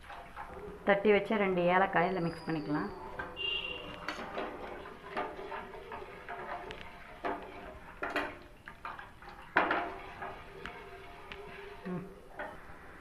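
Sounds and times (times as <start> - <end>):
spoon knocking in cooking pot: 3.5 - 11.4.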